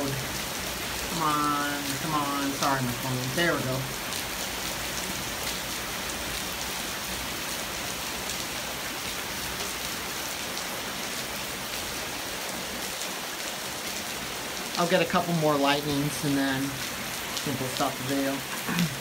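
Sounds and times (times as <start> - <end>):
heavy rain pouring: 0.0 - 19.0.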